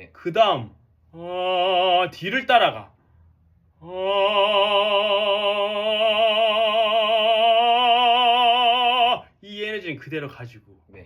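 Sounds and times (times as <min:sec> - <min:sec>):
person singing long note with vibrato: 0:03.8 - 0:09.2.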